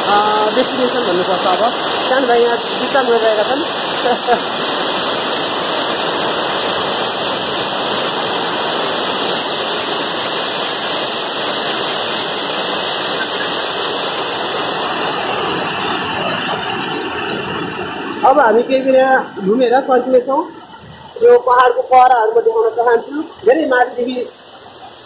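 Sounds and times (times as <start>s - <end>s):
waterfall rushing: 0.0s - 25.0s.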